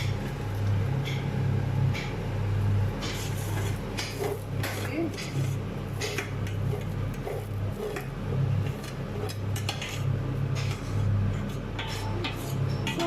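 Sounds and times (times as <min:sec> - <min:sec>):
rice frying: 0:00.0 - 0:13.0
steady low hum: 0:00.0 - 0:13.0
metal spoon scraping a pot: 0:03.0 - 0:13.0.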